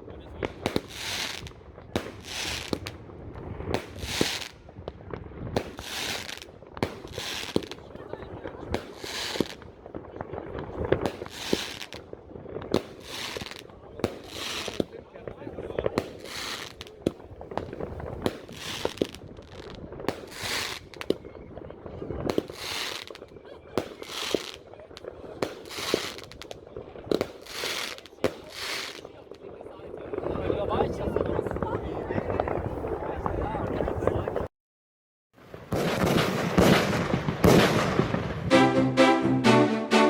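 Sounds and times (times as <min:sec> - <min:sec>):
firework shots: 0:00.0 - 0:29.5, 0:35.4 - 0:38.7
firework hissing crackle: 0:00.6 - 0:04.9, 0:05.6 - 0:08.0, 0:08.7 - 0:09.7, 0:10.7 - 0:15.0, 0:15.9 - 0:29.2.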